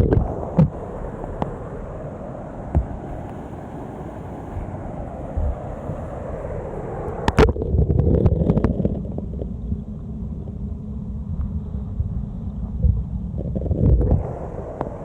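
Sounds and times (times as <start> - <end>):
wind buffeting microphone: 0.0 - 15.0
waterfall rushing: 14.2 - 15.0.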